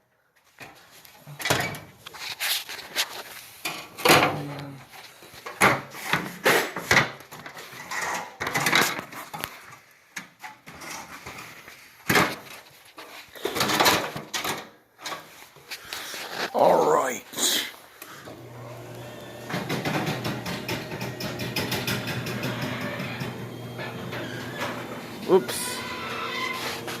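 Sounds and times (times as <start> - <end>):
ladder knocks and clatters: 19.4 - 23.4.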